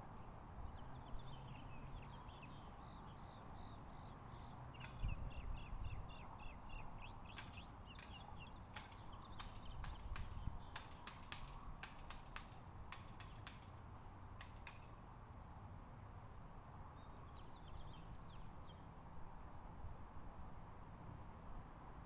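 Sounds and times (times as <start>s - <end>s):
bird chirping: 0.6s - 11.0s
sharp clicks: 7.3s - 13.7s.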